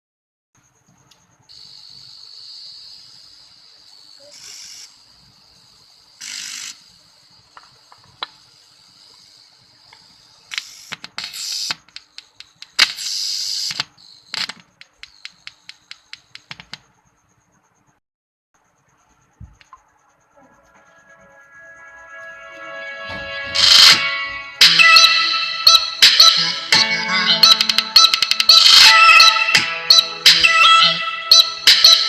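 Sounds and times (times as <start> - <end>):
speaker hissing: 7.7 - 12.0
sharp crackling clicks: 9.9 - 16.9
faint high whine: 18.6 - 27.2.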